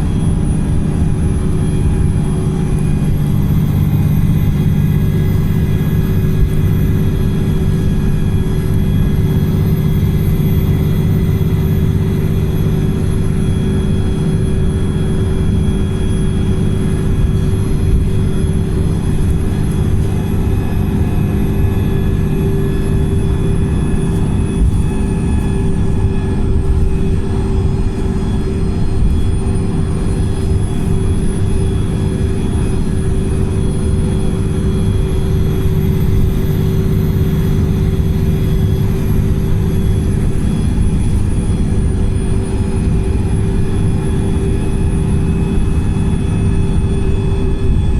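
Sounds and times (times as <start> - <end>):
bus engine drone: 0.0 - 47.9
road rumble: 0.0 - 47.9.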